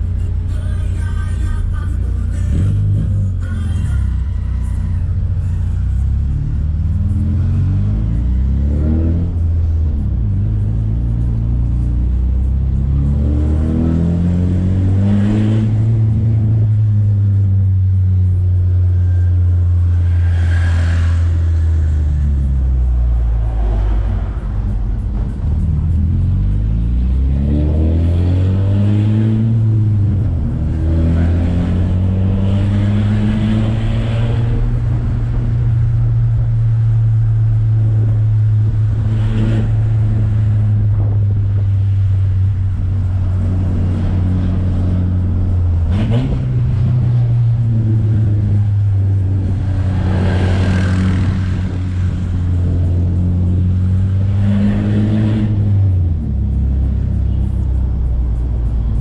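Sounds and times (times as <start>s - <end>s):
car engine and exhaust revving: 0.0s - 59.0s.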